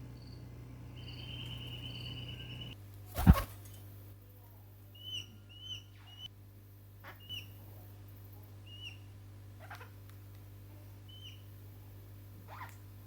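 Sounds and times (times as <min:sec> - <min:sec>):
parrots giving high-pitched calls: 0:09.6 - 0:10.0, 0:12.5 - 0:12.8.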